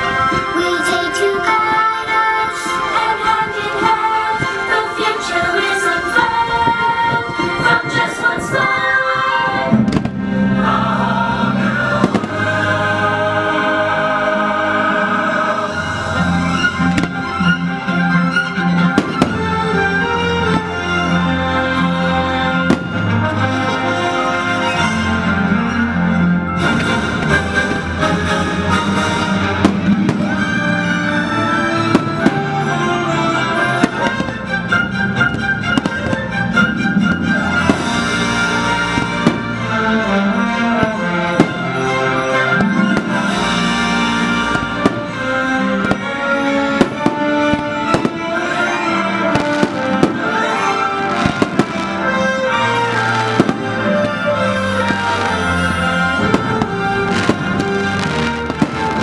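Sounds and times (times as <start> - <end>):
orchestral music over loudspeakers: 0.0 - 59.0
fireworks bangs and pops: 9.8 - 10.2, 12.0 - 12.5, 16.9 - 17.3, 18.9 - 19.5, 22.7 - 23.1, 29.6 - 30.5, 31.8 - 32.5, 37.6 - 39.6, 42.6 - 43.7, 44.4 - 45.2, 45.8 - 46.2, 46.8 - 48.4, 49.3 - 50.4, 51.1 - 52.0, 53.1 - 55.4, 56.1 - 59.0.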